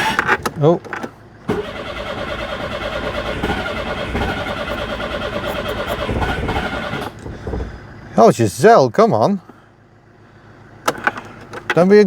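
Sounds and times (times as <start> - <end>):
engine cranking on starter motor: 0.0 - 7.6.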